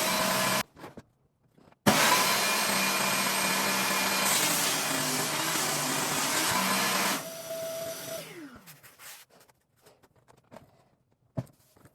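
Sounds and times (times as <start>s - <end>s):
table saw cutting wood: 0.0s - 0.6s, 1.9s - 8.7s.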